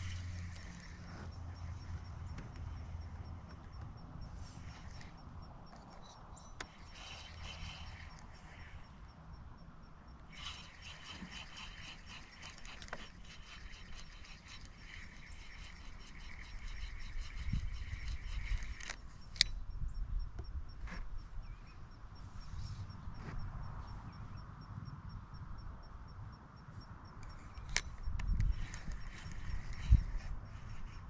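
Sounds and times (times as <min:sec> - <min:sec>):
fishing reel gears ticking: 0:00.0 - 0:20.3, 0:26.9 - 0:31.0.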